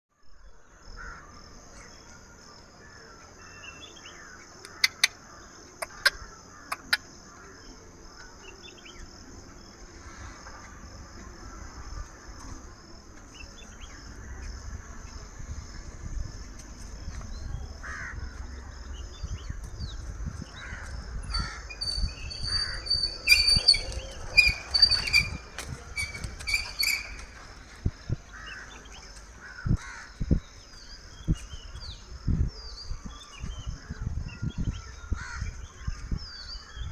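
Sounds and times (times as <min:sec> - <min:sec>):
bird calls: 0:00.4 - 0:15.2, 0:16.5 - 0:36.9
insect drone: 0:00.4 - 0:36.8
sharp clicks: 0:04.6 - 0:05.2, 0:05.8 - 0:07.0.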